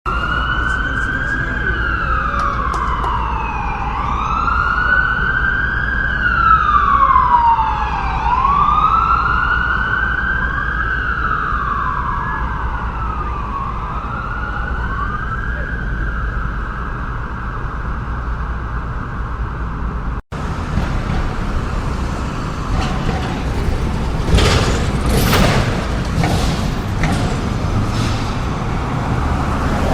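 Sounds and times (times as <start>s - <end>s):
city traffic rumble: 0.1s - 29.9s
emergency vehicle siren wailing: 0.1s - 29.9s
vehicles whooshing past: 18.9s - 29.9s.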